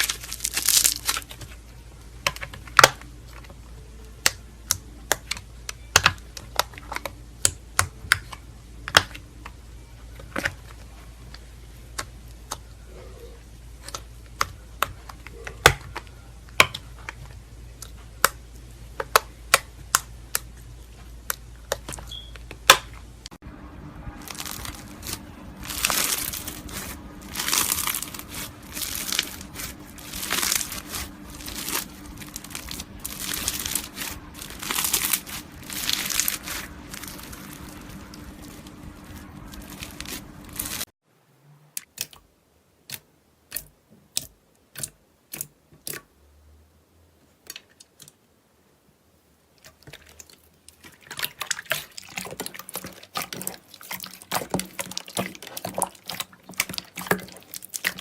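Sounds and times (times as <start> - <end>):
slime squishing: 0.0 - 3.6, 10.1 - 23.1, 24.2 - 40.9, 42.8 - 46.0, 49.6 - 58.0
low steady hum: 0.0 - 45.2.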